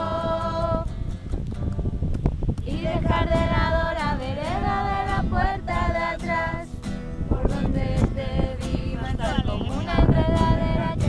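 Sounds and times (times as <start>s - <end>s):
pop song with high voice: 7.3s - 11.0s.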